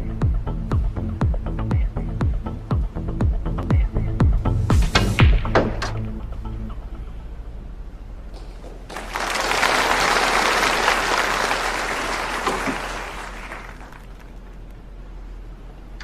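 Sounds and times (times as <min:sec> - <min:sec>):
audience applauding: 0:08.4 - 0:14.7.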